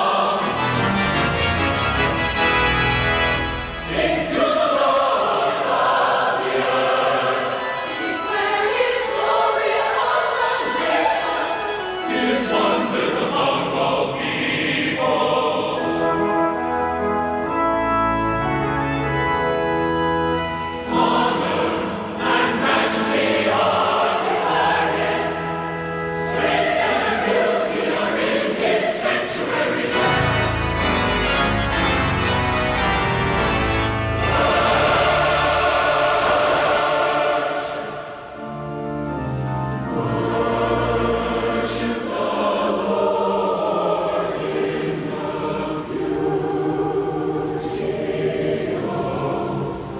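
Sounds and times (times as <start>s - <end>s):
organ accompaniment: 0.0s - 8.9s, 11.2s - 49.2s
choir singing held chords: 0.0s - 49.9s.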